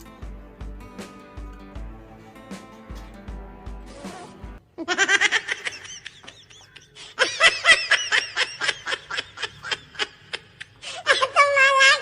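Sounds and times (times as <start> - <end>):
person laughing: 4.8 - 11.6.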